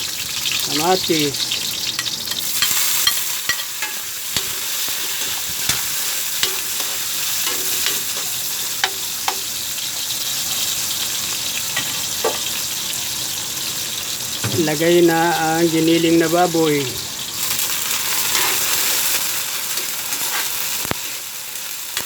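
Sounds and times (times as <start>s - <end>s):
food sizzling in hot oil: 0.0s - 22.0s
spatula stirring and scraping pan: 1.6s - 9.6s, 17.5s - 21.0s.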